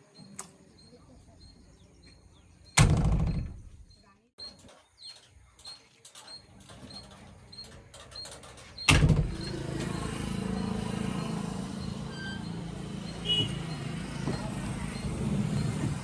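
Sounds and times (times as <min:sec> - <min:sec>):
heavy diesel engine running: 0:08.9 - 0:16.0.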